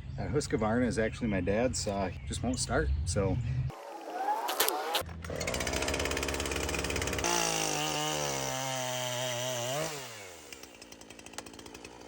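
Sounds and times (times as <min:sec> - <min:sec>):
chainsaw cutting wood: 0:03.8 - 0:12.0.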